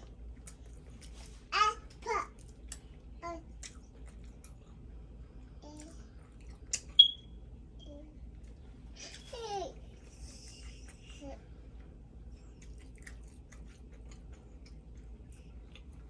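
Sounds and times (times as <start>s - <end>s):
wet chewing mouth clicks: 12.4s - 16.0s.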